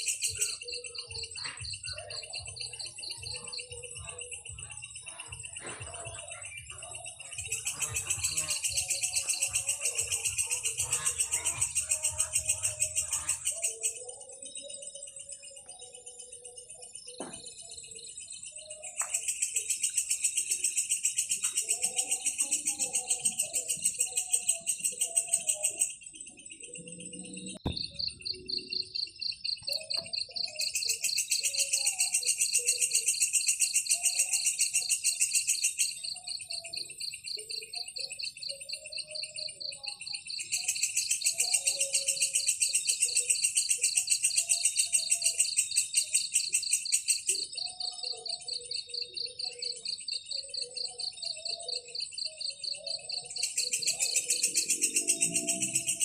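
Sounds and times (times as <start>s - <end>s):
insects trilling: 0.0s - 56.0s.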